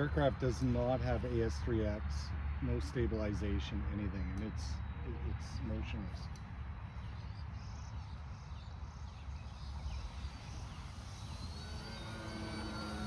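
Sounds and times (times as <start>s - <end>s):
model airplane motor droning: 6.7s - 13.0s.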